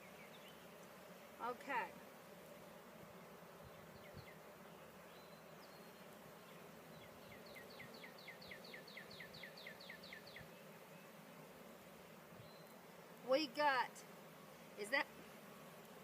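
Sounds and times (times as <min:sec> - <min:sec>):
bees buzzing: 0:00.0 - 0:16.0.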